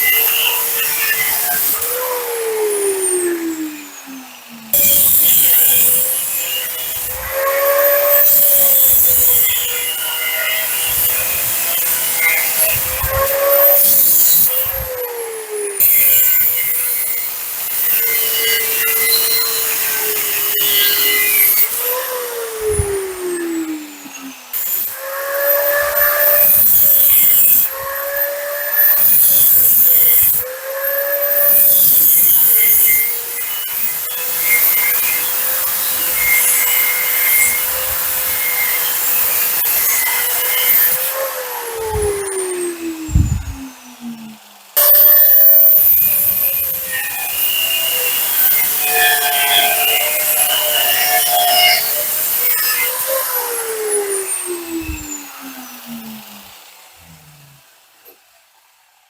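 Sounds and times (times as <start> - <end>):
angle grinder motor whine: 0.0 - 58.2
hissing metal cutting noise: 0.0 - 58.2.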